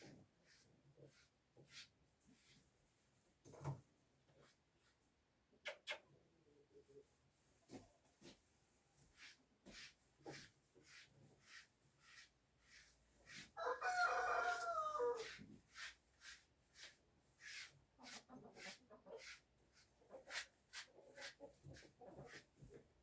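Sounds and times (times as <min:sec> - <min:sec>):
rooster crowing: 0:13.6 - 0:15.3.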